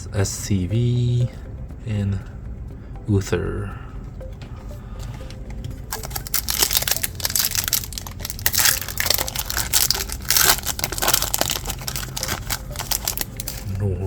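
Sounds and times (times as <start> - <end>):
foil wrapper crinkling: 5.8 - 13.8.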